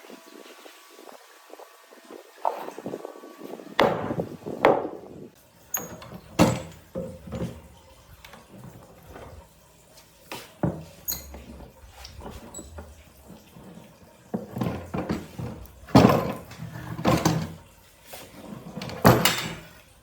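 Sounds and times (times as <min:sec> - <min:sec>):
knocks and clunks: 0:14.4 - 0:17.6.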